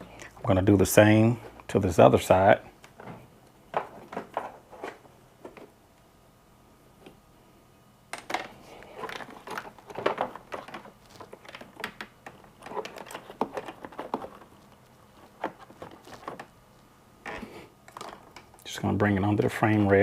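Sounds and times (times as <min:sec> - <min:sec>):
small clicks taps and rustles: 0:08.1 - 0:16.6.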